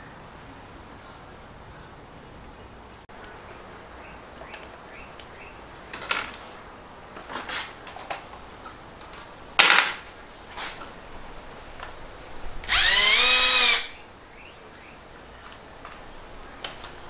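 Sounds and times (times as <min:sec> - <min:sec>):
metal screws and tools clinking: 0:09.1 - 0:10.2
power drill whirr: 0:12.7 - 0:14.0.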